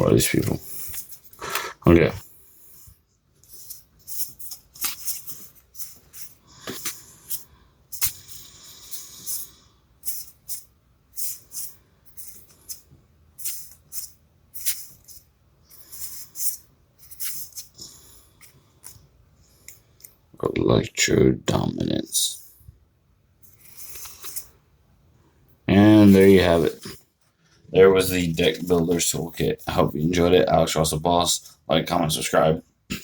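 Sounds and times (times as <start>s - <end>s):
trading cards flipping: 3.4s - 8.4s, 16.0s - 17.8s, 23.5s - 24.5s.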